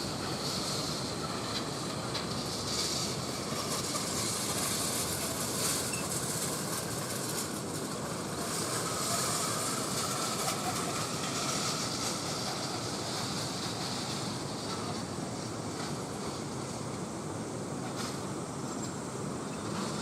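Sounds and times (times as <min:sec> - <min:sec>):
roller slide rattling: 0:00.0 - 0:17.1, 0:17.8 - 0:20.0.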